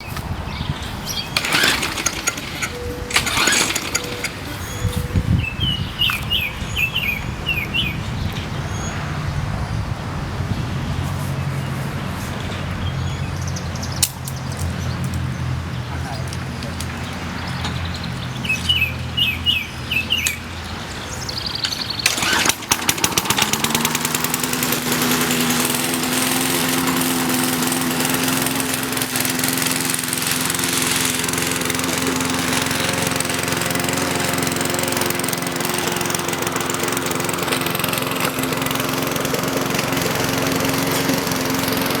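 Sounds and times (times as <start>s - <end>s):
lawn mower engine starting: 0.0s - 8.6s, 16.3s - 42.0s
bird chirps: 3.9s - 9.1s, 15.9s - 22.1s.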